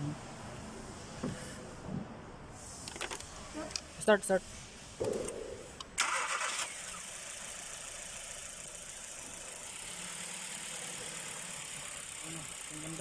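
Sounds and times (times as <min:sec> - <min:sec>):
car engine idling: 0:05.1 - 0:13.0.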